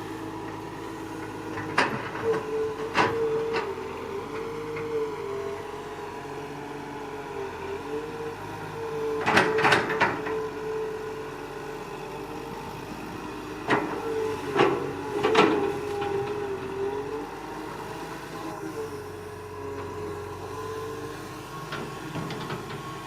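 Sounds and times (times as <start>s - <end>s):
excavator engine whine: 0.0s - 23.0s.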